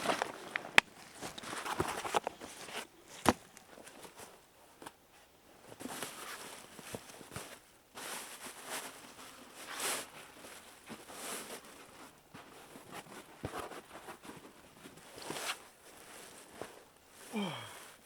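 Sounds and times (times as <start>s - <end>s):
rustling of boughs: 0.0s - 18.0s.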